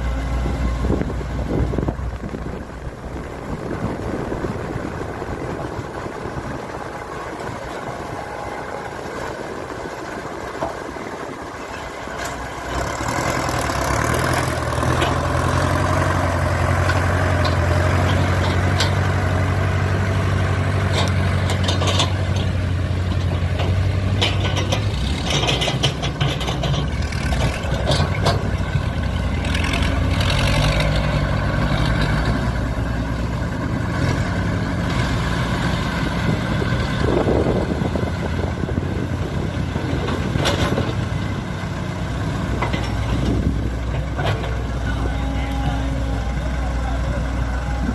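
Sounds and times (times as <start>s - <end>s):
diesel engine running: 0.0s - 47.9s
metallic clanks and knocks: 20.9s - 28.7s, 42.6s - 45.0s.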